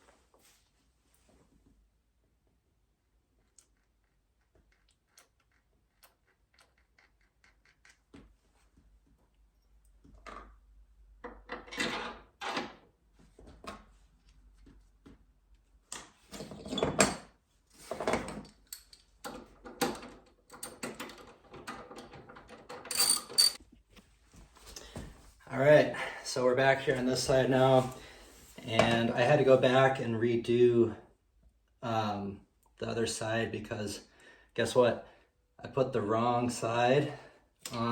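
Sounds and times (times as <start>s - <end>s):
metal parts rattling: 22.4s - 23.6s.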